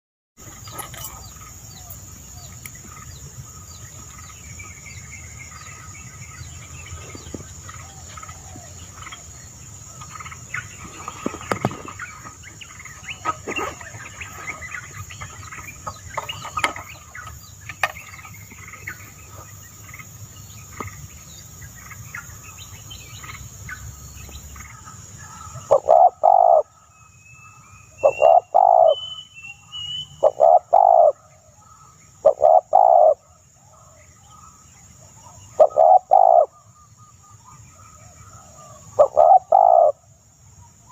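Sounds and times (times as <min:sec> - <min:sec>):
high insect drone: 0:00.4 - 0:40.9
wild birds calling: 0:00.4 - 0:40.9
bird loud low call: 0:24.7 - 0:34.5, 0:35.2 - 0:40.0.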